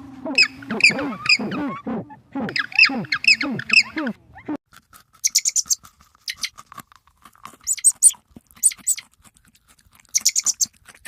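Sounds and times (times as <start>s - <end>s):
birds squawking: 0.0s - 4.6s.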